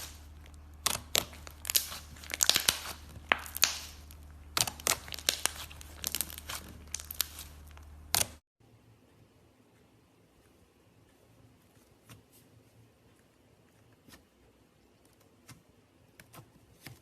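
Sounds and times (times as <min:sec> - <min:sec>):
slime clicking and popping: 0:00.0 - 0:08.4.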